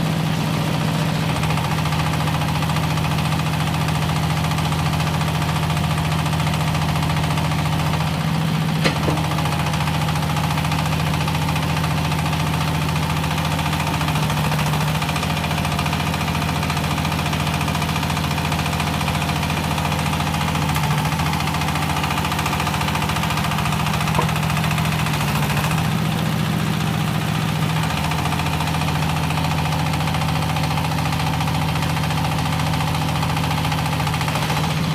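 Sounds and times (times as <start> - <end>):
hydraulic power unit humming: 7.1 - 11.9, 12.6 - 30.4.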